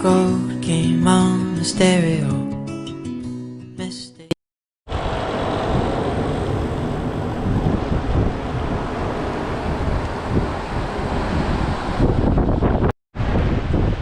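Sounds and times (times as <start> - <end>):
wind buffeting microphone: 4.9 - 14.0.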